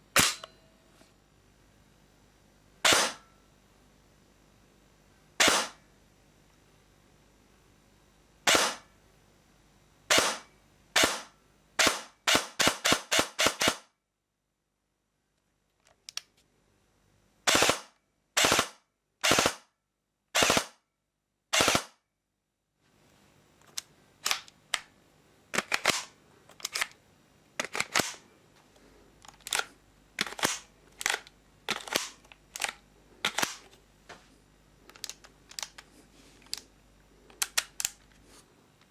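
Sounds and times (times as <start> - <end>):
airsoft gun shots snapping: 0.2 - 0.5, 2.8 - 3.3, 5.4 - 5.8, 8.5 - 8.8, 10.1 - 13.9, 17.5 - 19.6, 20.4 - 20.8, 21.6 - 22.0, 25.6 - 26.1.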